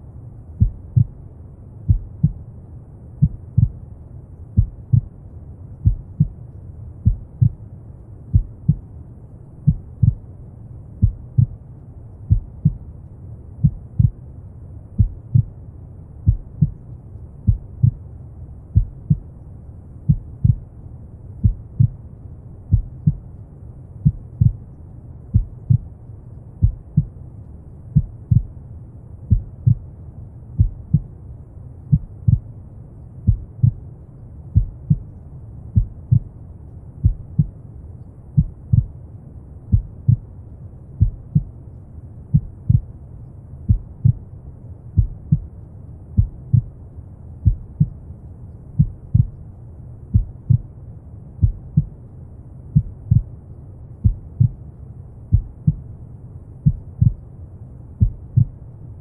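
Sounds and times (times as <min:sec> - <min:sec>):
low rush of noise: 0:00.0 - 0:59.0
heartbeat thumps: 0:00.6 - 0:01.2, 0:01.9 - 0:02.4, 0:03.2 - 0:03.8, 0:04.6 - 0:05.1, 0:05.8 - 0:06.4, 0:07.0 - 0:07.6, 0:08.3 - 0:08.9, 0:09.6 - 0:10.3, 0:11.0 - 0:11.6, 0:12.3 - 0:12.8, 0:13.6 - 0:14.2, 0:15.0 - 0:15.6, 0:16.2 - 0:16.8, 0:17.4 - 0:18.0, 0:18.8 - 0:19.3, 0:20.1 - 0:20.6, 0:21.4 - 0:22.0, 0:22.7 - 0:23.3, 0:24.0 - 0:24.6, 0:25.3 - 0:25.9, 0:26.6 - 0:27.2, 0:27.9 - 0:28.6, 0:29.3 - 0:29.8, 0:30.6 - 0:31.1, 0:31.9 - 0:32.5, 0:33.2 - 0:33.8, 0:34.6 - 0:35.2, 0:35.8 - 0:36.3, 0:37.0 - 0:37.6, 0:38.4 - 0:39.0, 0:39.7 - 0:40.3, 0:41.0 - 0:41.6, 0:42.3 - 0:42.9, 0:43.7 - 0:44.2, 0:45.0 - 0:45.5, 0:46.2 - 0:46.7, 0:47.4 - 0:48.0, 0:48.8 - 0:49.4, 0:50.1 - 0:50.7, 0:51.4 - 0:51.9, 0:52.8 - 0:53.3, 0:54.0 - 0:54.6, 0:55.3 - 0:55.9, 0:56.6 - 0:57.3, 0:58.0 - 0:58.6.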